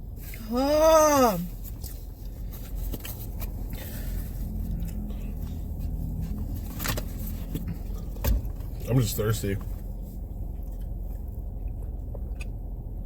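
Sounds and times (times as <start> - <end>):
low engine rumble: 0.0 - 13.0
handling noises: 1.6 - 10.8.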